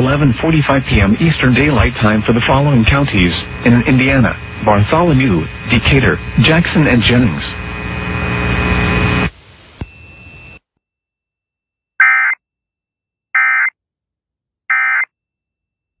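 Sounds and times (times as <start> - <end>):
electrical hum: 0.0 - 10.6.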